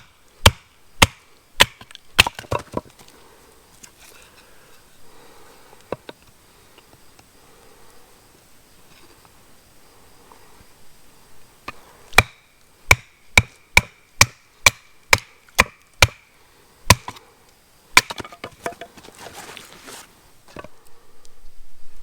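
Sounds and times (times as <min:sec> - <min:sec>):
hatchet chopping wood: 0:00.0 - 0:03.0, 0:11.7 - 0:16.3, 0:16.9 - 0:17.2, 0:18.0 - 0:20.0
crackling and rustling of wood: 0:01.8 - 0:07.7, 0:17.1 - 0:22.0.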